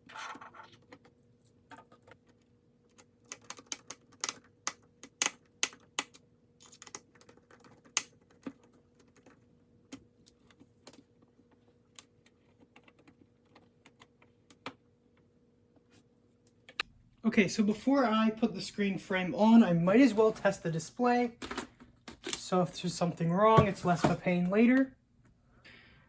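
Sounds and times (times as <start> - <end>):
plastic parts clicking and tapping: 0.2 - 11.0.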